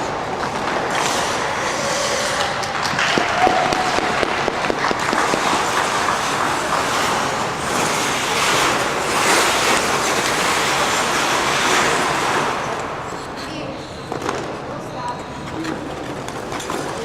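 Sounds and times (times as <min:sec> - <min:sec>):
audience applauding and cheering: 0:00.0 - 0:09.0.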